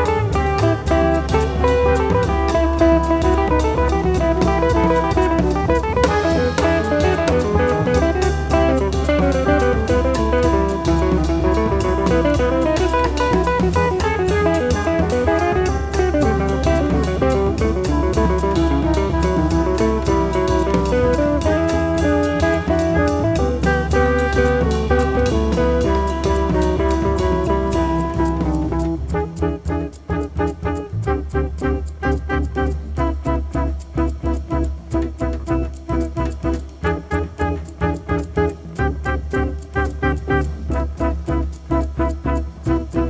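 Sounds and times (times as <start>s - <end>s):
drum kit with cymbals: 0.0s - 29.2s
guitar melody: 0.0s - 30.9s
electric bass: 0.0s - 43.0s.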